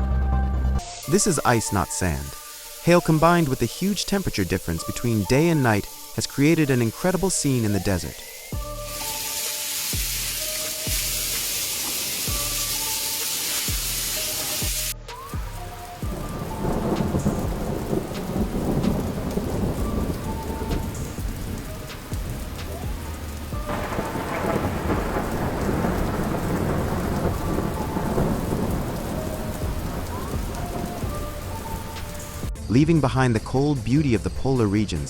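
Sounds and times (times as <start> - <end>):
loud even hiss: 0.8 - 24.6
rain: 0.8 - 32.6
thunder rumbling: 15.3 - 32.6.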